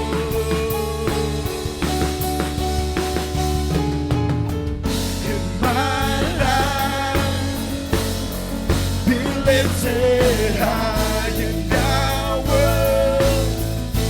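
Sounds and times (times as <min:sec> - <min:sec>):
person singing: 0:00.0 - 0:02.4, 0:05.2 - 0:14.0
drum kit: 0:00.0 - 0:14.0
rock-style band playing: 0:00.0 - 0:14.0.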